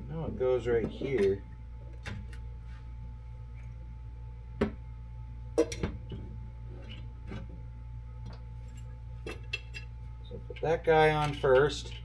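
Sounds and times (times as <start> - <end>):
steady low hum: 0.0 - 12.0.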